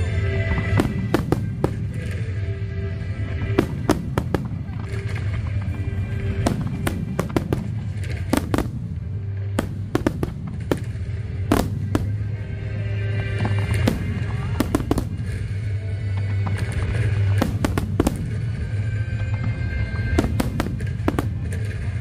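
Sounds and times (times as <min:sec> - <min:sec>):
background music: 0:00.0 - 0:22.0
fireworks bangs: 0:00.0 - 0:22.0.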